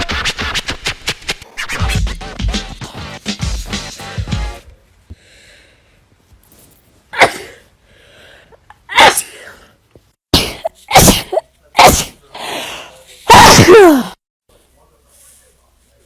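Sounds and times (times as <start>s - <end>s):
person sneezing: 7.1s - 7.7s, 8.9s - 9.7s, 10.3s - 14.2s.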